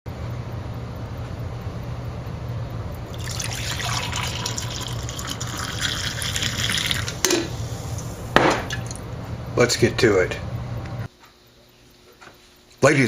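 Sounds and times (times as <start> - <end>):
steady low hum: 0.1 - 13.0
liquid pouring: 3.1 - 9.1.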